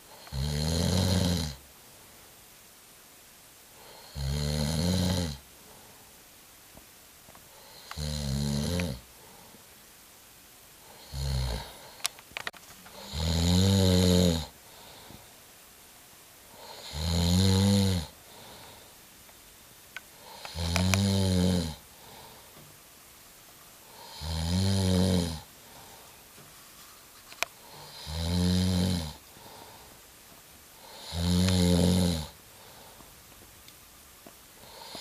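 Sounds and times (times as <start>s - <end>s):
person snoring: 0.1s - 1.6s, 3.8s - 5.4s, 7.6s - 9.1s, 10.8s - 12.0s, 12.9s - 15.2s, 16.5s - 18.8s, 20.2s - 22.4s, 23.9s - 26.0s, 27.6s - 29.9s, 30.8s - 33.0s, 34.6s - 35.0s.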